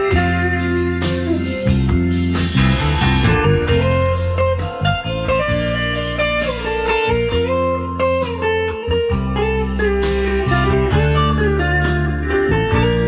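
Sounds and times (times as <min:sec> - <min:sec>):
bass and chords backing: 0:00.0 - 0:13.0
electric guitar solo: 0:00.0 - 0:13.0.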